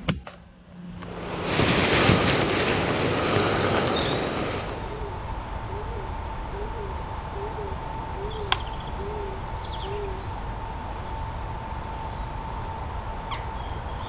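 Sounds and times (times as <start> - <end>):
bird soft hooting coo: 4.9 - 10.4.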